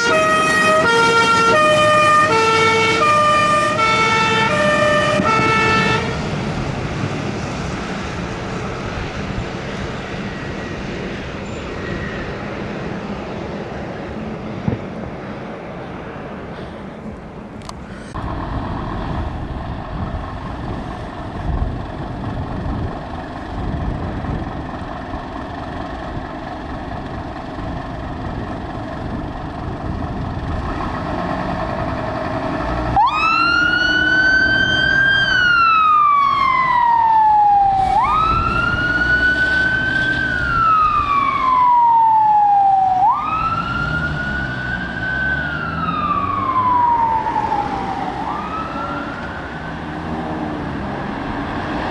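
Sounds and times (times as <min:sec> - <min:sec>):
fire engine siren wailing: 0:00.0 - 0:20.3, 0:22.5 - 0:51.9
road noise: 0:00.0 - 0:51.9
vehicle engine: 0:00.0 - 0:51.9.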